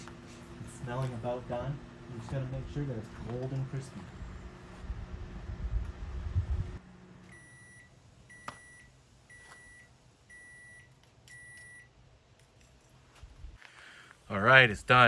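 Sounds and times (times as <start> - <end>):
microwave oven beeps: 7.2 - 12.0.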